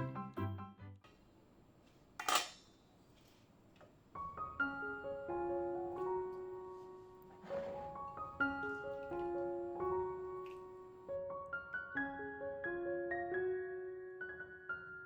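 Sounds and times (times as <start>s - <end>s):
soft sustained piano notes: 4.1s - 15.0s.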